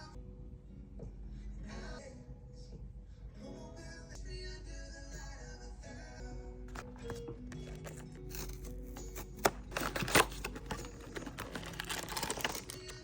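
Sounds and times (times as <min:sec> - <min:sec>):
soft background music: 0:00.0 - 0:13.0
packaging crinkling: 0:06.7 - 0:13.0.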